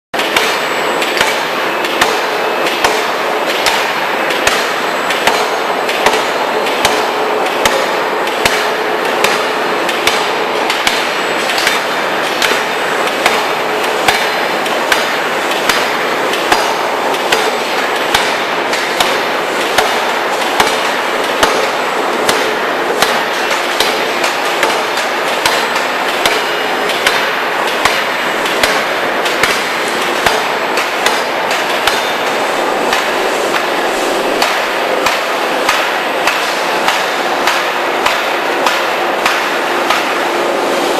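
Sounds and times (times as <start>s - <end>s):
forging hammer striking: 0.2s - 40.3s
machine running noise: 0.2s - 40.9s.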